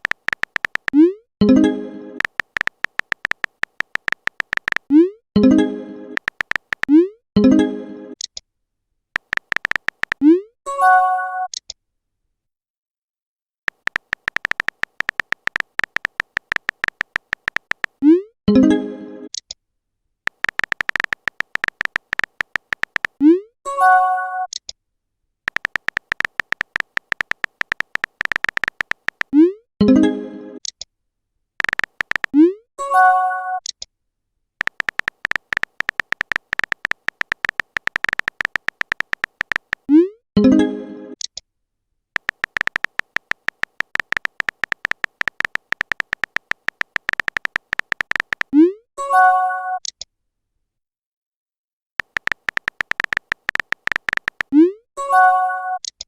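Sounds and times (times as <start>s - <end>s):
synthetic keyboard typing clicks: 0.0s - 7.6s, 9.2s - 10.5s, 13.7s - 18.7s, 20.3s - 23.5s, 25.5s - 30.0s, 31.6s - 32.6s, 34.6s - 40.6s, 42.2s - 48.8s, 52.0s - 56.0s.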